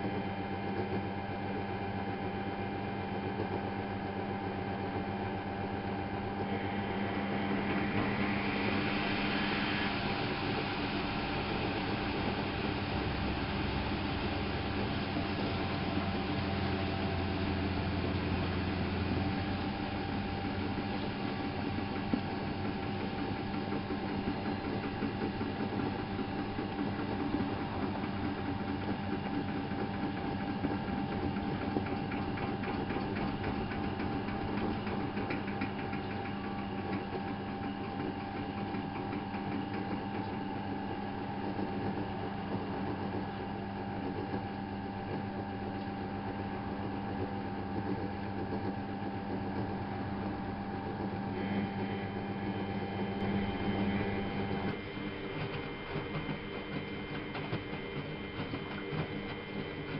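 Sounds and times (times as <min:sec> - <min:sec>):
washing machine running: 0:00.0 - 0:59.9
deeper hum: 0:05.6 - 0:29.8.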